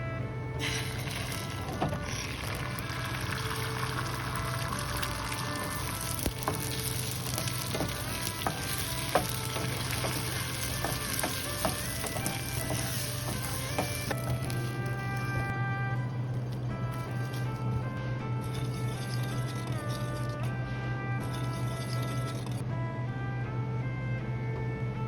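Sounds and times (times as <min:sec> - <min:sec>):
background music: 0:00.0 - 0:25.0
food sizzling in oil: 0:00.6 - 0:15.5
utensil clicking against pan: 0:01.4 - 0:14.6.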